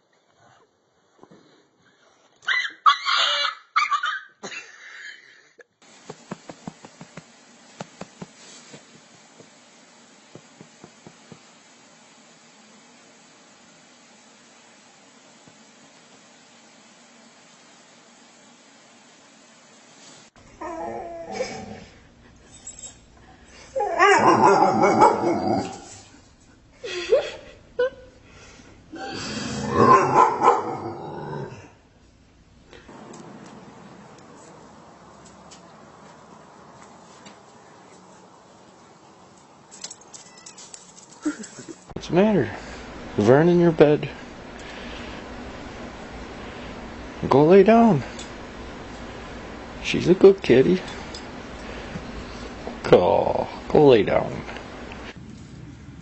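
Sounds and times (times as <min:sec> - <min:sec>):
dog yelping and whining: 0:02.5 - 0:04.3, 0:20.5 - 0:21.8, 0:23.7 - 0:26.0
steady hiss: 0:04.5 - 0:30.6, 0:31.6 - 0:56.0.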